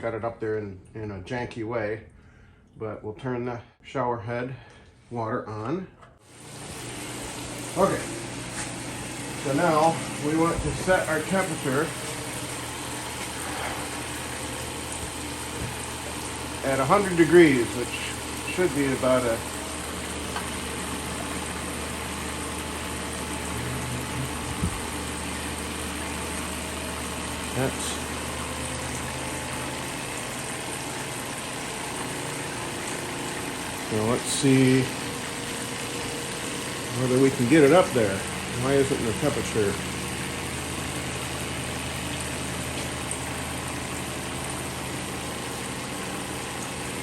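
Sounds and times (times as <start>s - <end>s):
pump humming: 6.2s - 47.0s
shower water spraying: 6.3s - 47.0s.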